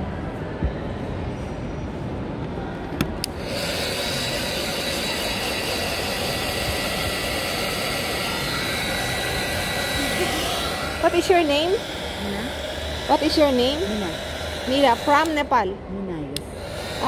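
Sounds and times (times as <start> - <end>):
electric blower whirring: 3.2 - 15.7, 16.4 - 17.0.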